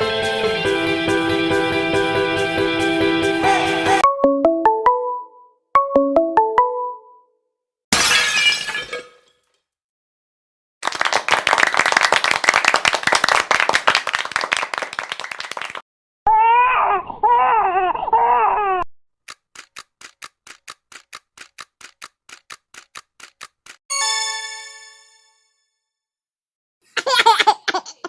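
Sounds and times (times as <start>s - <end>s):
high wavering baby-like cry: 16.3s - 18.8s
quick light ticks: 19.3s - 23.8s.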